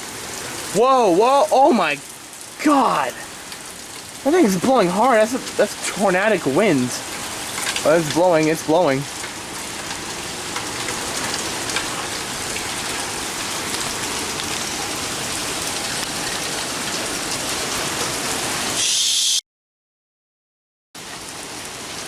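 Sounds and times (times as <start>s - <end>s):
heavy rain: 0.0s - 19.2s, 21.0s - 22.0s.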